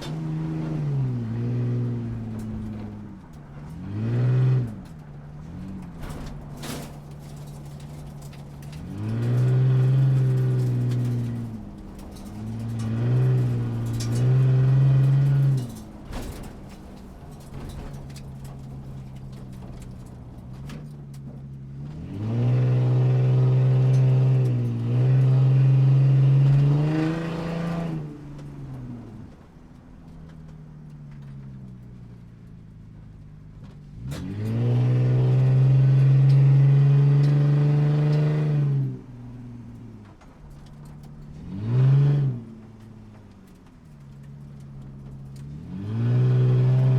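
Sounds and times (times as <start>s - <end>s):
motorcycle engine revving: 45.7s - 46.9s.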